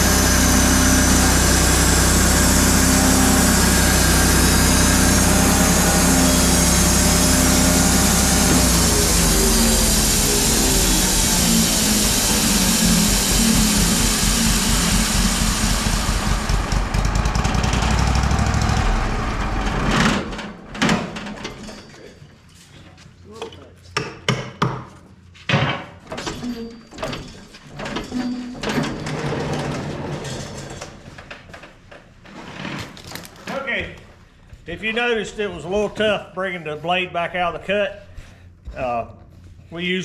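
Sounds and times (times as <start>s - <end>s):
sawmill band blade cutting wood: 0.0s - 16.8s.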